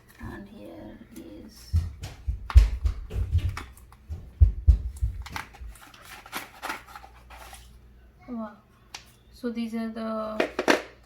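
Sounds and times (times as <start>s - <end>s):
dull knocks: 1.7s - 5.6s
packaging rustling and crinkling: 4.8s - 7.8s.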